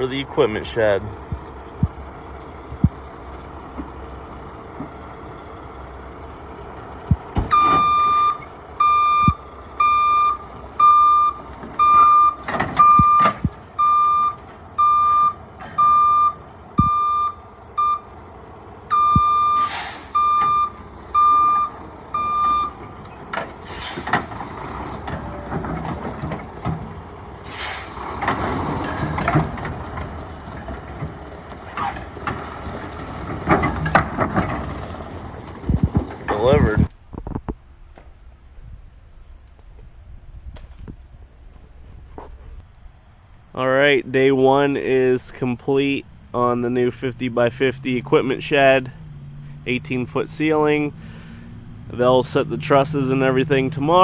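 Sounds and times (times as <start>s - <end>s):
truck engine running: 0.0s - 37.1s, 43.8s - 54.0s
truck reversing alarm beeping: 7.1s - 18.2s, 18.8s - 25.6s, 44.4s - 54.0s
short hissing bursts: 19.6s - 20.2s, 23.6s - 24.2s, 27.4s - 28.0s.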